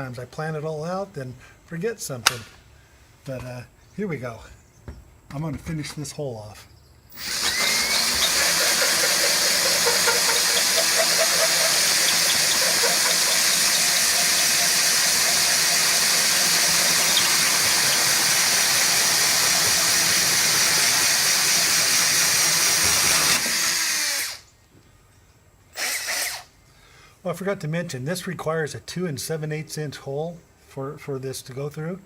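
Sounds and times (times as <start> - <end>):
drill with hole saw grinding: 7.1 - 24.5, 25.7 - 26.5.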